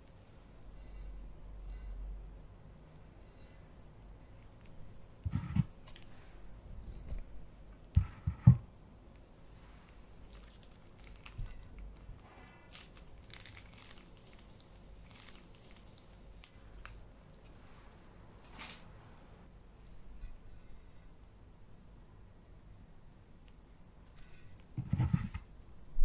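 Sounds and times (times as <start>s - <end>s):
dull thumps: 8.0s - 8.7s
slime containers crinkling: 10.3s - 11.7s, 12.7s - 17.5s.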